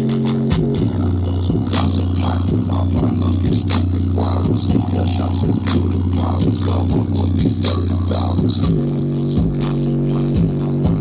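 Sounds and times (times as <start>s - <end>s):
deep bass notes: 0.0s - 11.0s.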